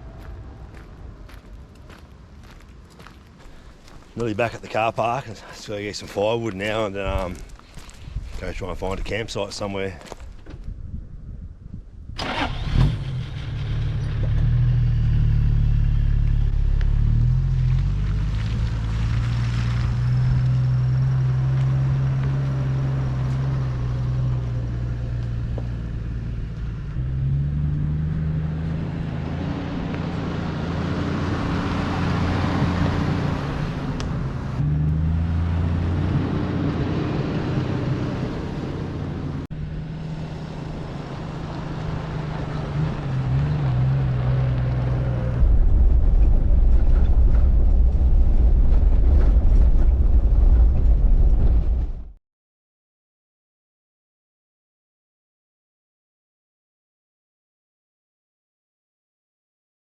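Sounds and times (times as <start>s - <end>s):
low rumble: 12.8s - 37.1s, 42.6s - 52.2s.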